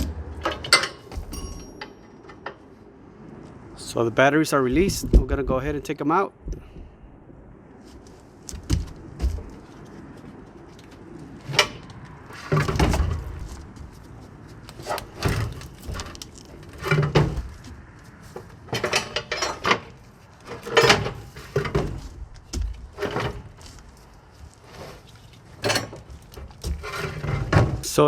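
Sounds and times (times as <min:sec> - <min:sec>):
metallic clanks and scrapes: 0:00.0 - 0:02.8, 0:11.4 - 0:13.7, 0:14.7 - 0:28.0.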